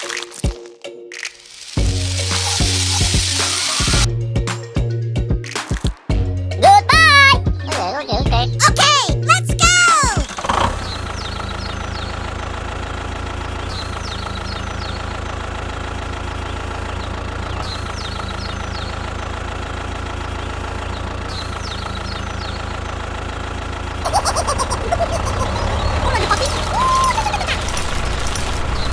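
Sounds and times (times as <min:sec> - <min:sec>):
vehicle engine idling: 0:10.3 - 0:28.9.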